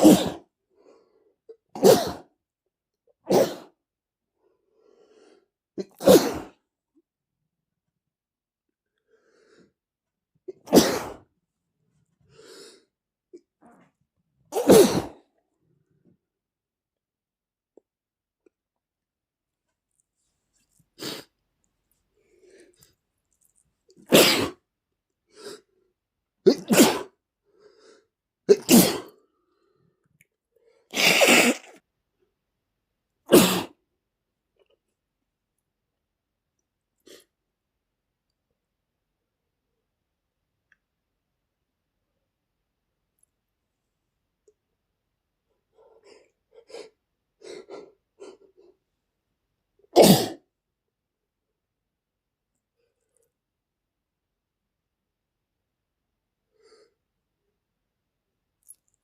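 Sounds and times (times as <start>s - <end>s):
man sneezing: 0.0s - 0.5s, 1.8s - 2.3s, 14.5s - 15.2s, 26.5s - 27.1s, 28.5s - 29.1s, 31.0s - 31.8s, 33.3s - 33.8s.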